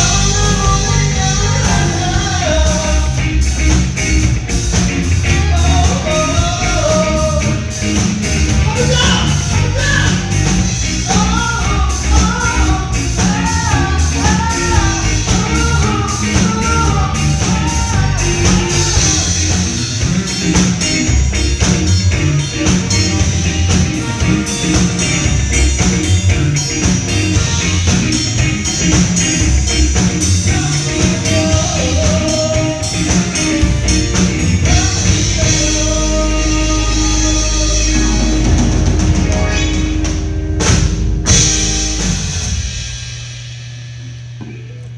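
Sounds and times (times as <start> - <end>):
person singing: 0.0 - 3.9, 5.3 - 20.9, 26.8 - 40.1
band music: 0.0 - 44.9.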